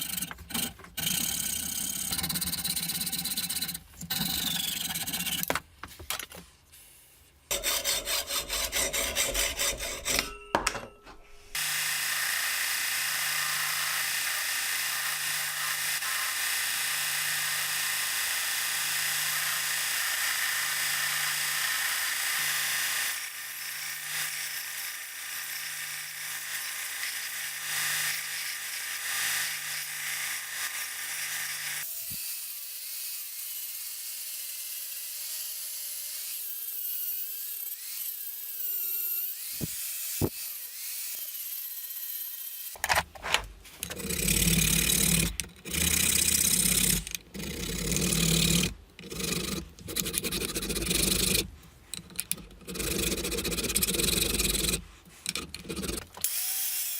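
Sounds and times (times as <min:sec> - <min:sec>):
hand filing strokes: 0:07.5 - 0:10.3
electric power tool humming: 0:11.6 - 0:25.6, 0:38.8 - 0:42.8, 0:55.9 - 0:56.9.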